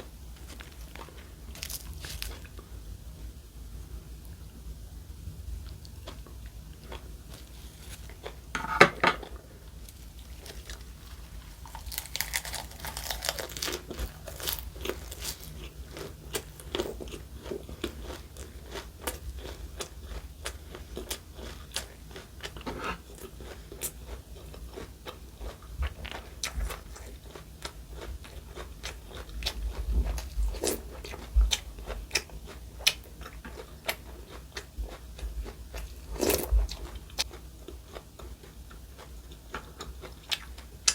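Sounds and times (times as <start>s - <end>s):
crunching and chewing food: 0.0s - 3.4s, 5.6s - 40.9s.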